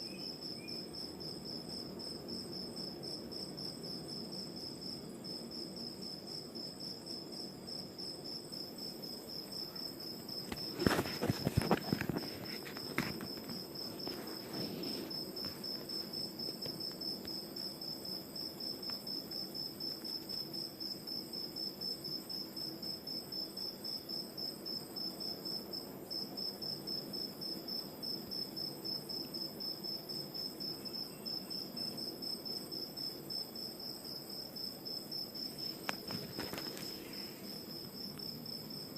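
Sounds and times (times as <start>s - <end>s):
crickets chirping: 0.0s - 38.9s.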